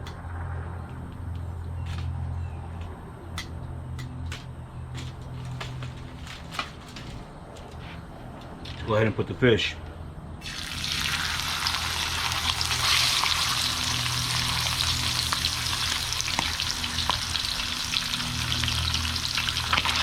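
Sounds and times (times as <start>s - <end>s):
fish sizzling in hot oil: 10.4s - 20.0s
oil popping and crackling: 10.4s - 20.0s.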